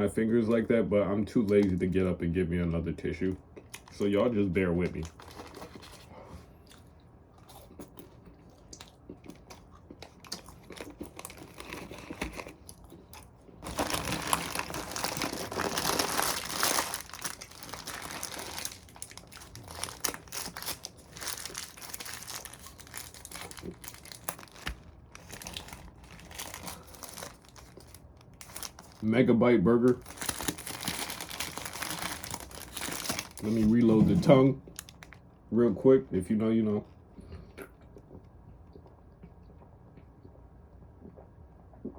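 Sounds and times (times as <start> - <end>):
paper wrapper crinkling: 4.8 - 6.0, 13.6 - 29.2, 29.8 - 35.2.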